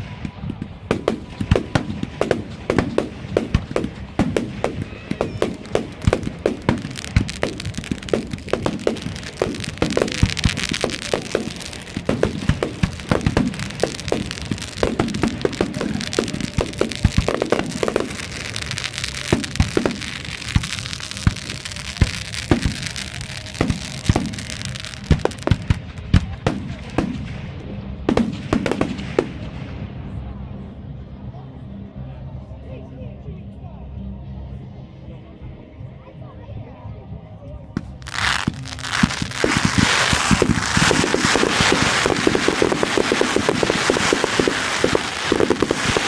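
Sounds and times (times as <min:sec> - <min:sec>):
fireworks crackle: 0:00.6 - 0:27.3, 0:37.8 - 0:46.0.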